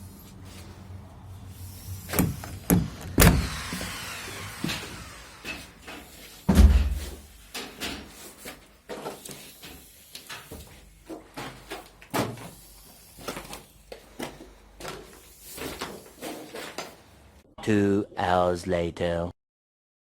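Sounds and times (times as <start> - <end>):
heavy thump: 6.5 - 7.2.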